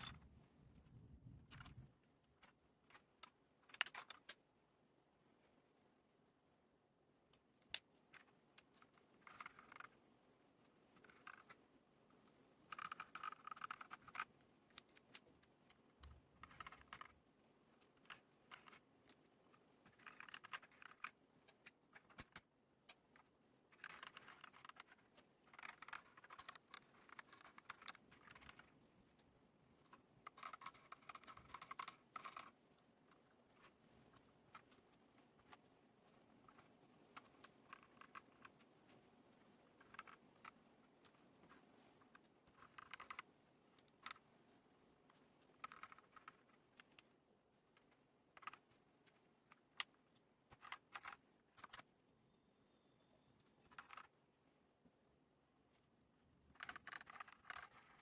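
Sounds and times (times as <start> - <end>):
typing on mechanical keyboard: 12.7 - 15.2, 30.3 - 32.6, 42.5 - 43.3, 56.6 - 58.0.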